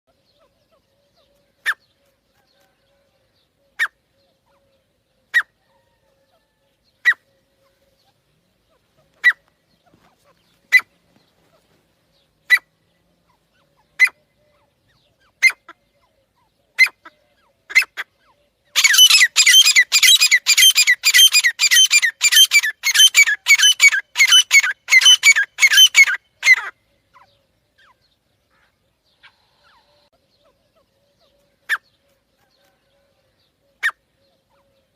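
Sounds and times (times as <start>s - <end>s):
francolin calling: 12.2s - 34.9s.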